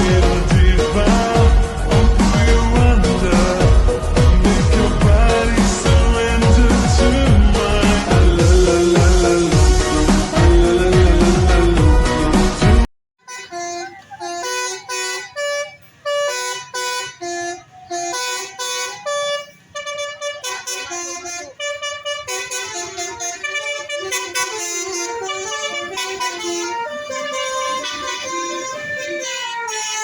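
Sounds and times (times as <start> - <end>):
multi-tone air horn tune: 13.2 - 30.0.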